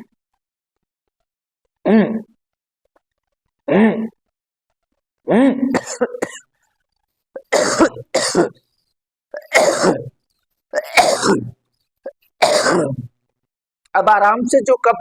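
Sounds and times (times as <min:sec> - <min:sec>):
man clearing his throat: 0:05.3 - 0:06.4, 0:07.4 - 0:08.6, 0:09.4 - 0:10.1, 0:10.8 - 0:11.6, 0:12.4 - 0:13.1
man coughing: 0:05.5 - 0:06.4, 0:07.4 - 0:08.6, 0:09.4 - 0:10.1, 0:10.8 - 0:11.6, 0:12.4 - 0:13.1.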